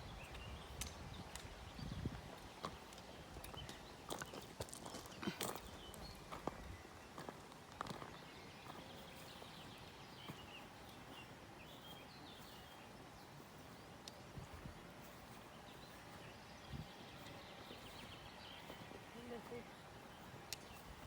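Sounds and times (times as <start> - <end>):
low background hiss: 0.0 - 21.0
soft ticks: 20.5 - 20.7.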